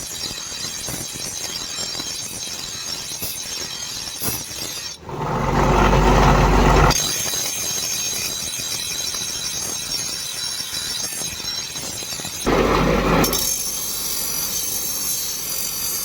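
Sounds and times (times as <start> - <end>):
workshop machine running: 5.0 - 7.0, 12.5 - 13.9
high whine: 12.5 - 13.6.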